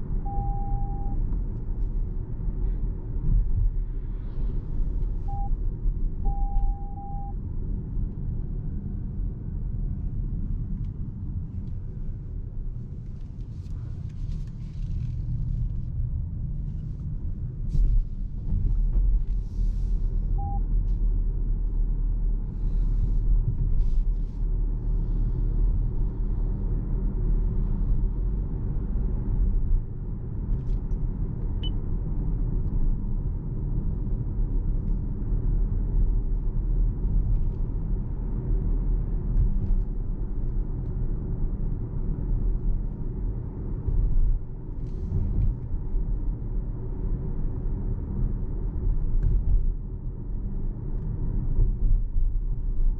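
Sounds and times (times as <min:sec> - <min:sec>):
road and tyre rumble: 0:00.0 - 0:52.9
short electronic beeps: 0:00.2 - 0:01.2, 0:05.3 - 0:05.5, 0:06.3 - 0:07.3, 0:20.4 - 0:20.6.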